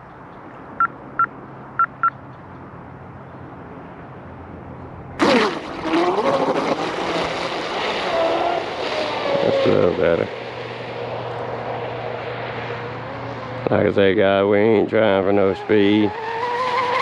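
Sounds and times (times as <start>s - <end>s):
short electronic beeps: 0.8s - 2.2s
electric boat motor whining: 5.2s - 9.9s.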